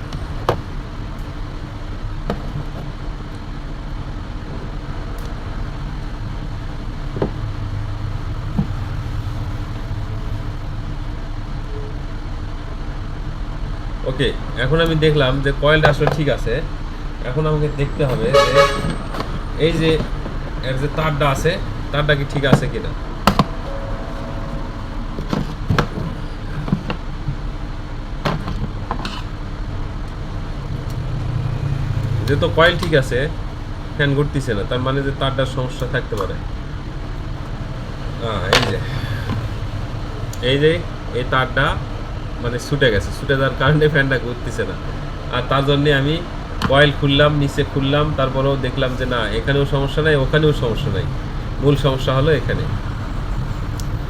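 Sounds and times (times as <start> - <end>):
faint hum: 21.5 - 27.2.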